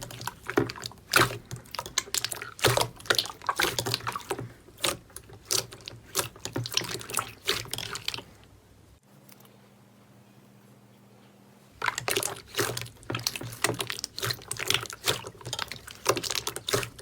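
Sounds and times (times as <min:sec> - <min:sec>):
slime squished by hand: 0:00.0 - 0:08.4, 0:11.8 - 0:17.0.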